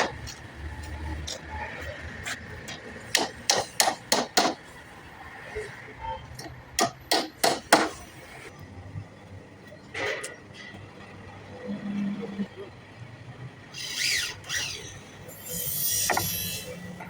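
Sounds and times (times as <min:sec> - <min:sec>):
hammer striking wood: 0:03.1 - 0:04.6, 0:06.8 - 0:08.0.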